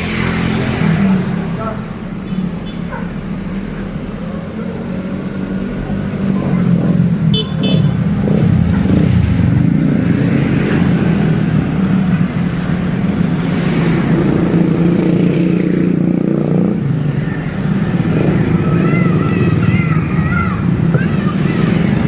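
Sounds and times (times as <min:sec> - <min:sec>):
bus engine rumbling: 0:00.0 - 0:15.2, 0:16.5 - 0:22.0
road traffic: 0:00.0 - 0:22.0.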